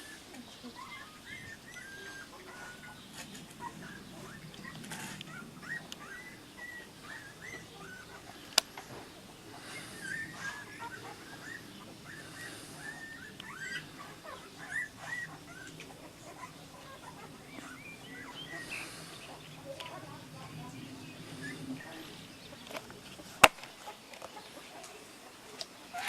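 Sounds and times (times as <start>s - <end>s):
puppies squeaking and whimpering: 0.0s - 23.3s.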